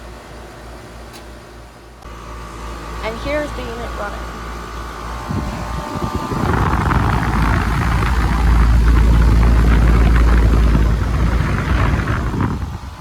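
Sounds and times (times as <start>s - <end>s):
air conditioner unit rumbling: 0.0s - 13.0s.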